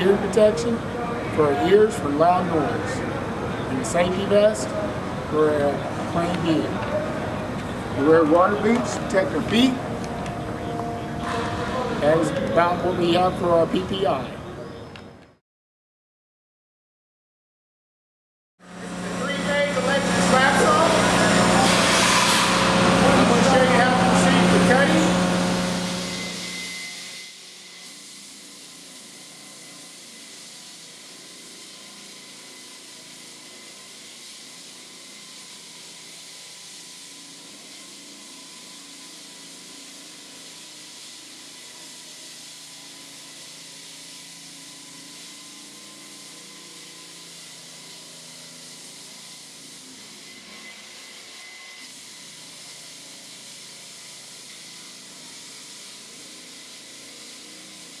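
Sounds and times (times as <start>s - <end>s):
electric saw cutting concrete: 18.8s - 58.0s.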